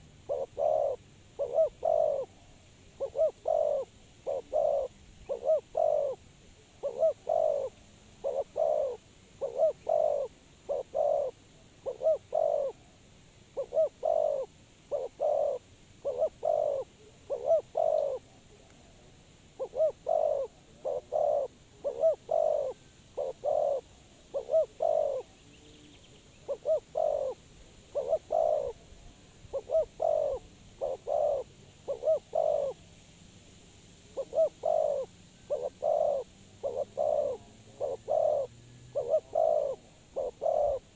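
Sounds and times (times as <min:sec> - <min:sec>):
dove cooing: 0:00.0 - 0:12.9, 0:13.5 - 0:18.4, 0:19.5 - 0:25.4, 0:26.4 - 0:32.8, 0:34.1 - 0:40.9.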